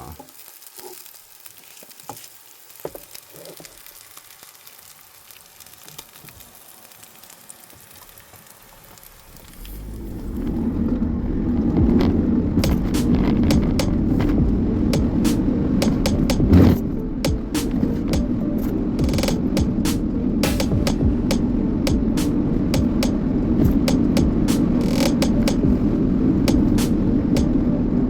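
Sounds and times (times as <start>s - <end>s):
sausage sizzling in a frying pan: 0.0s - 9.9s
loud low rumble: 9.4s - 28.0s.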